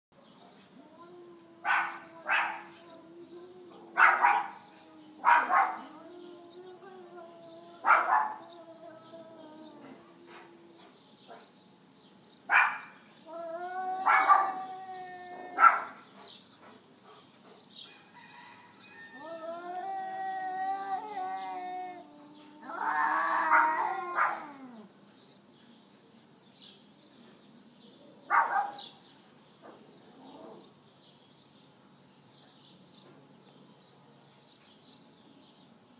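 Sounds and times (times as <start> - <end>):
cats yowling: 0.8 - 11.0, 13.2 - 16.0, 19.0 - 24.9.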